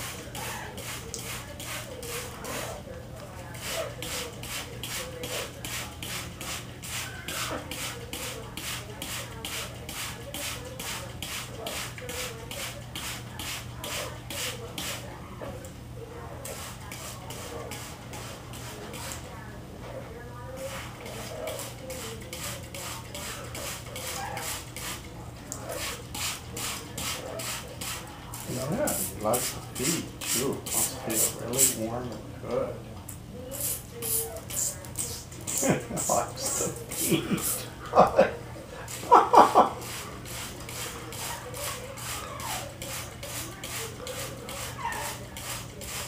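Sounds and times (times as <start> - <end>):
water spraying in spurts: 0.0 - 2.6, 20.7 - 28.1, 38.9 - 46.0
water spray hissing in pulses: 33.6 - 37.7.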